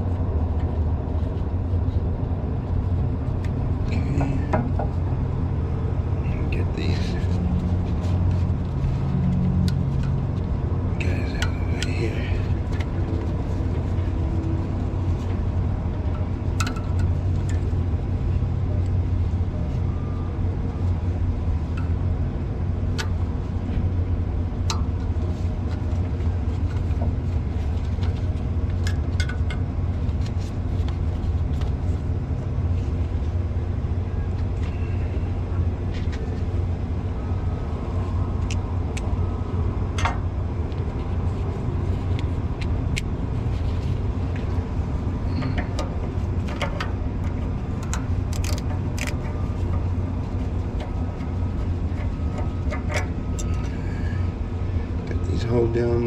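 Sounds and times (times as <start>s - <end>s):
low mechanical hum: 0.0s - 56.0s
hand tools clicking on metal: 46.5s - 49.9s.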